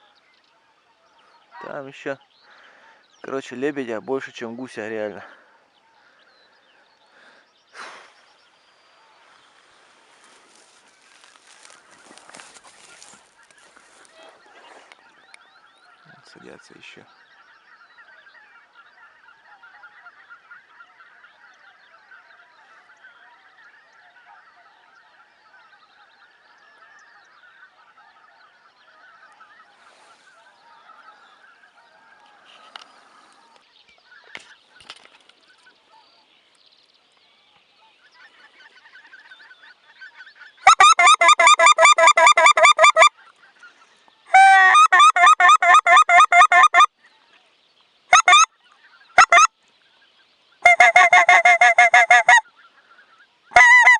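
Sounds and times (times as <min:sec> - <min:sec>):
distant geese and swans calling: 0:00.0 - 0:36.3, 0:37.6 - 0:53.9
rapid goose honking: 0:09.0 - 0:16.5, 0:17.1 - 0:34.5, 0:37.9 - 0:46.9, 0:48.1 - 0:49.5, 0:50.6 - 0:53.9.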